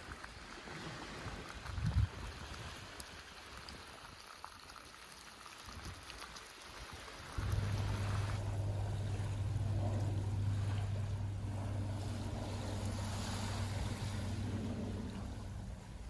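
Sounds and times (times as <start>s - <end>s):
surf washing on shore: 6.7s - 16.0s
boat engine droning: 7.4s - 16.0s.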